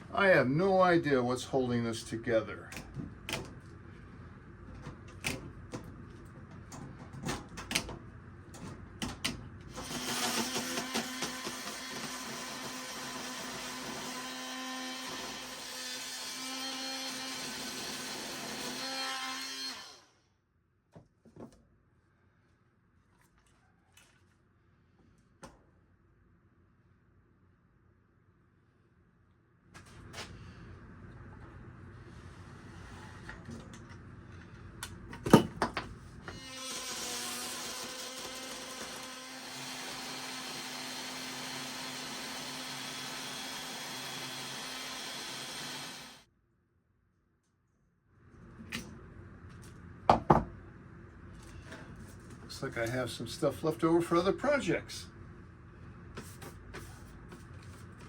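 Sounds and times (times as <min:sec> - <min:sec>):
power tool motor running: 0:09.7 - 0:19.0, 0:36.3 - 0:46.2.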